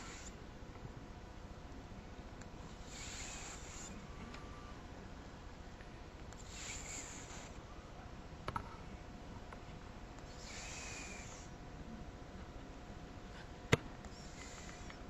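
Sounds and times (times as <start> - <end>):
cat snoring: 6.4 - 7.6, 10.3 - 11.5.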